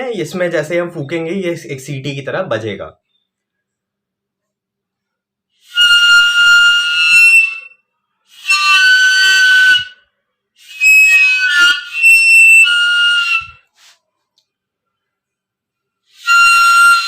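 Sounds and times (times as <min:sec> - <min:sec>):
shrill bottle cap whistle blasts: 0:08.4 - 0:10.0, 0:10.7 - 0:13.7.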